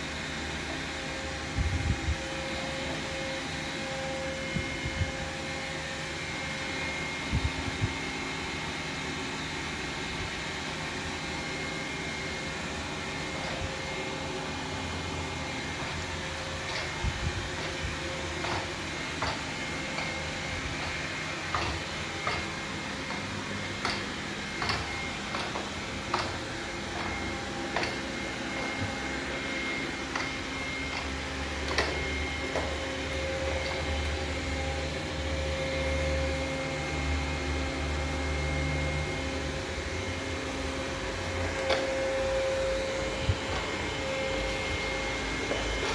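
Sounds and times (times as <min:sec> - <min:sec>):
robot vacuum whirring: 0:09.0 - 0:45.9
sharp knocks and clicks: 0:16.7 - 0:28.7.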